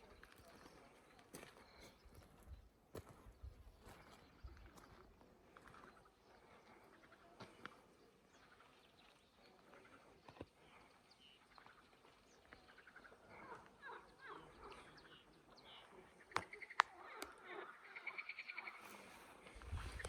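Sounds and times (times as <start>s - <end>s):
small birds chirping: 0.0s - 20.0s.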